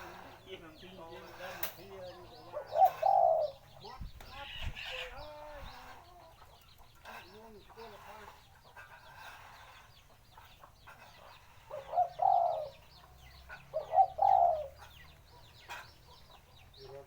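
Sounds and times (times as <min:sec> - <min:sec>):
dove cooing: 0:00.0 - 0:03.9, 0:11.0 - 0:16.3
small birds chirping: 0:00.0 - 0:17.0.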